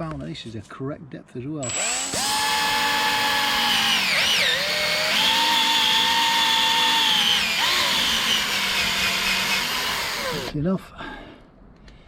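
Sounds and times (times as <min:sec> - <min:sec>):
power drill whine: 0:01.6 - 0:10.6.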